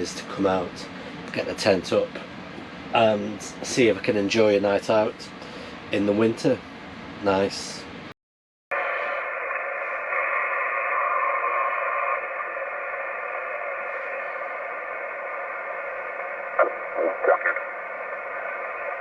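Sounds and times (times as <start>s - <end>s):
radio chirps: 8.7s - 19.0s
radio static hissing: 8.7s - 19.0s.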